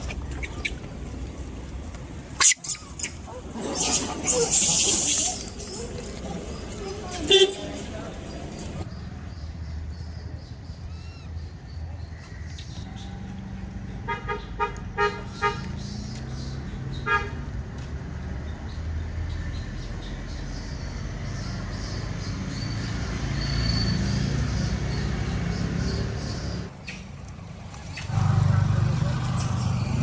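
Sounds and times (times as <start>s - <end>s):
road traffic noise: 0.0s - 30.0s
vehicle horn beeping: 7.3s - 7.6s.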